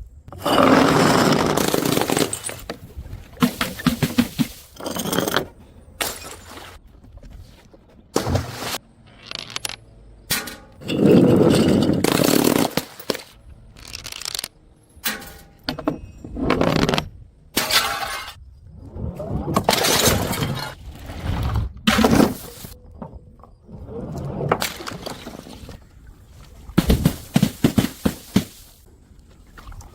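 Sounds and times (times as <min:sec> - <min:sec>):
breaking and crushing impacts: 0:00.8 - 0:06.5, 0:08.1 - 0:15.8, 0:26.8 - 0:28.8.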